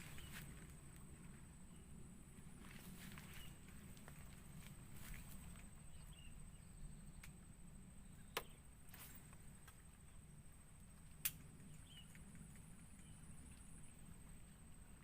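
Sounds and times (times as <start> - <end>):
faint low hum: 0.0 - 15.0.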